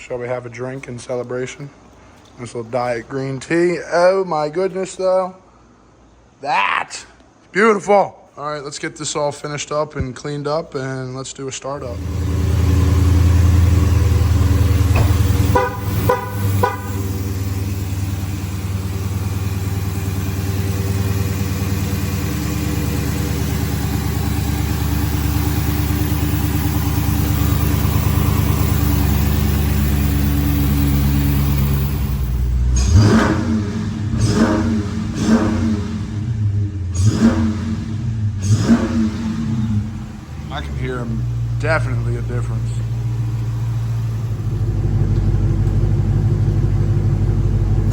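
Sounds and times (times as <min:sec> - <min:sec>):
car engine idling: 0:11.8 - 0:47.9
car engine revving: 0:11.8 - 0:47.9.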